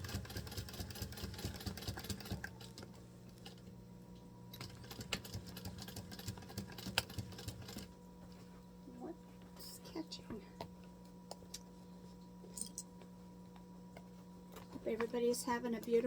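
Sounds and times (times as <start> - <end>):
sewing machine stitching: 0.0 - 2.8, 4.6 - 7.9
sewing machine motor humming: 0.0 - 3.6, 4.5 - 7.9.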